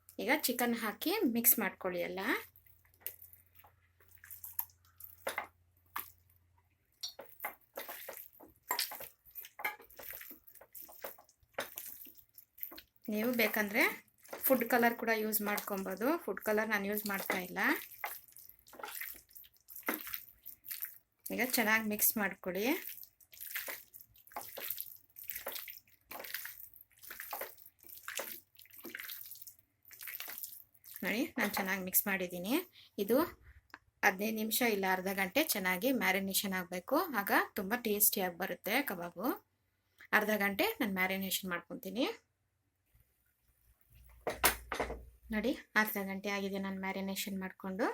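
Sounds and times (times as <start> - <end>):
wet squelching and slapping: 2.6 - 31.8.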